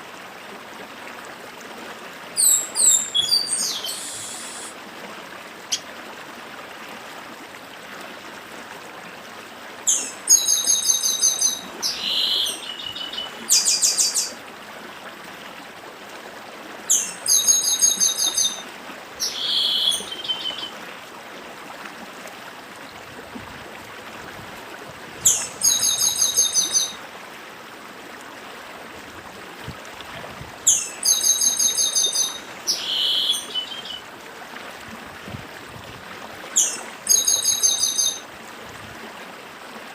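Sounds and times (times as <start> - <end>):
stream rushing: 0.0 - 39.9
bird singing high notes: 2.4 - 4.7.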